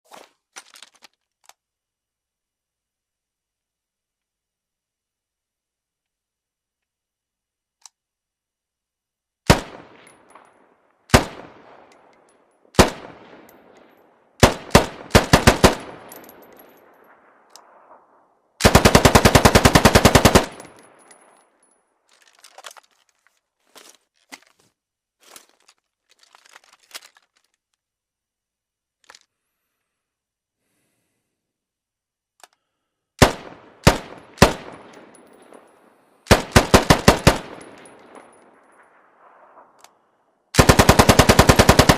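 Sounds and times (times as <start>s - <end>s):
machine gun firing: 9.5s - 10.1s, 11.1s - 11.8s, 12.8s - 13.5s, 14.4s - 16.3s, 18.6s - 21.0s, 33.2s - 35.0s, 36.3s - 38.2s, 40.6s - 41.9s.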